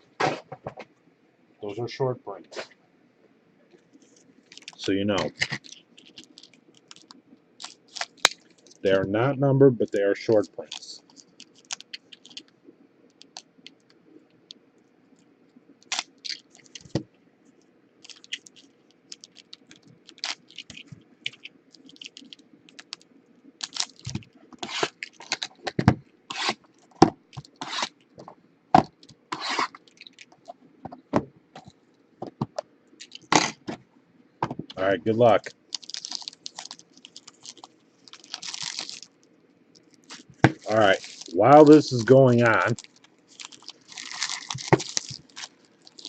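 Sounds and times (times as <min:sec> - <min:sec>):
faint low hum: 0:00.0 - 0:46.0
cards scraping and rustling: 0:24.0 - 0:26.6, 0:27.4 - 0:28.0, 0:29.3 - 0:30.5.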